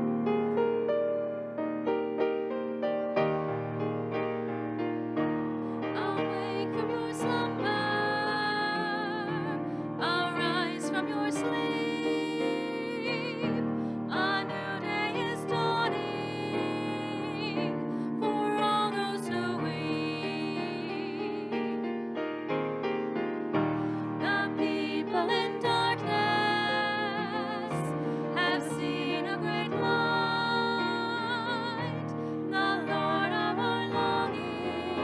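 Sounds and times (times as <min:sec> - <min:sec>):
piano accompaniment: 0:00.0 - 0:35.0
person singing with vibrato: 0:05.9 - 0:21.6, 0:24.2 - 0:35.0.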